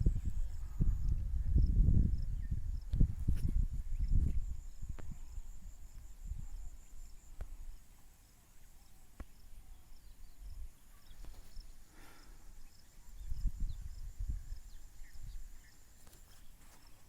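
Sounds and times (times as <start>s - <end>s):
wind rumble on microphone: 0.0s - 7.8s, 12.7s - 15.7s
birds chirping faintly: 3.8s - 17.0s.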